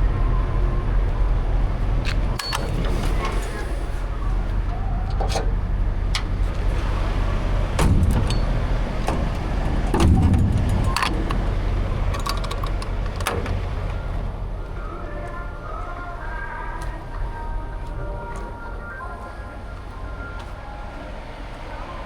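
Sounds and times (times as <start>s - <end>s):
vehicle engine idling: 0.0s - 22.0s
heavy thumps: 7.7s - 12.1s
metallic clicks and rattles: 7.8s - 14.0s.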